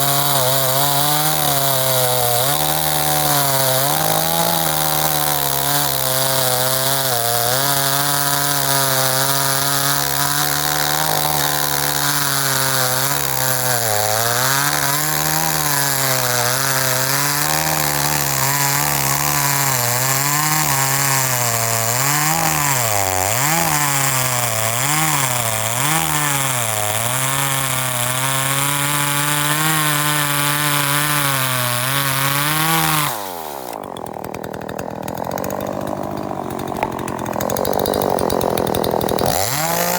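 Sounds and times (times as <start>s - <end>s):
chainsaw engine winding down: 0.0s - 39.9s
chainsaw running: 0.0s - 39.9s.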